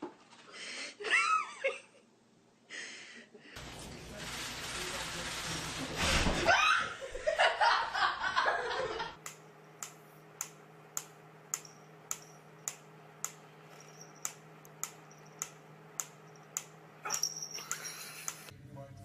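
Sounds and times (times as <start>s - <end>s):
sharp repeating clicks: 9.2s - 13.4s.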